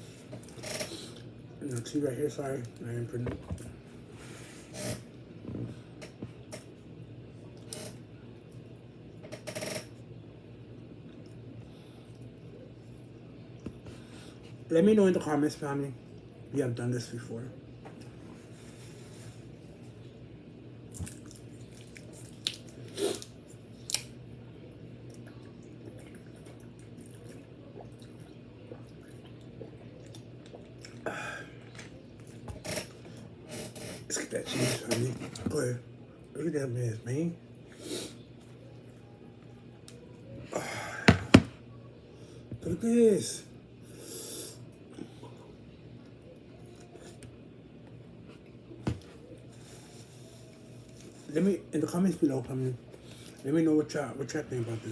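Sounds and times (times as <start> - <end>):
low background hum: 0.0 - 54.9
person chewing food: 20.9 - 24.1, 25.0 - 31.0.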